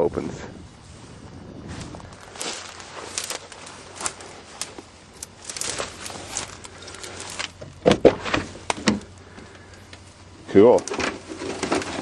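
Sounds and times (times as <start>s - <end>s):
clicks and scuffs: 1.7s - 10.0s.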